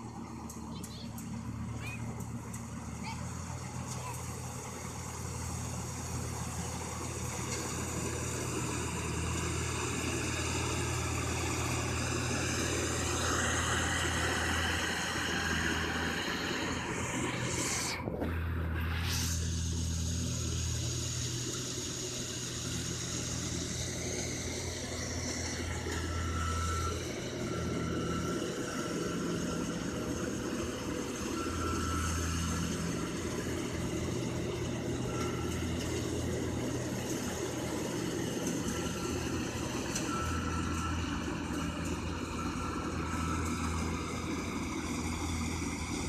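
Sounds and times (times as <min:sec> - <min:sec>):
combine harvester engine droning: 0:00.0 - 0:46.0.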